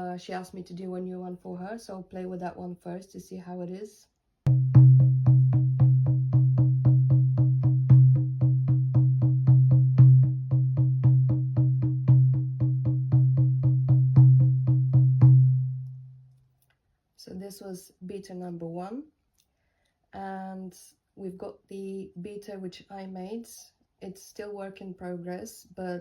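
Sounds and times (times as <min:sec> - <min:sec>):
hand drum steady beat: 0:04.5 - 0:16.0.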